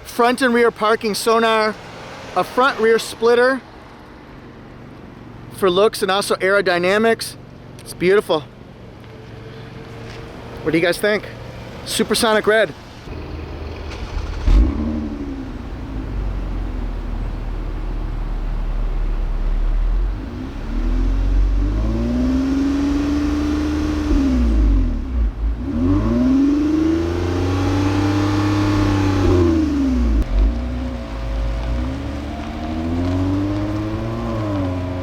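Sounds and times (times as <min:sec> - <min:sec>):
car engine idling and revving: 0:08.6 - 0:12.0, 0:12.8 - 0:35.0.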